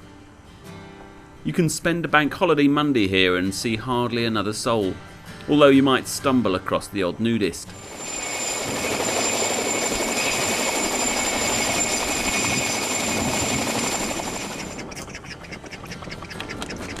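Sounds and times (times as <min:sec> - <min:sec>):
engine drone with high whine: 0:07.6 - 0:17.0
short waterfowl-like calls: 0:14.8 - 0:17.0.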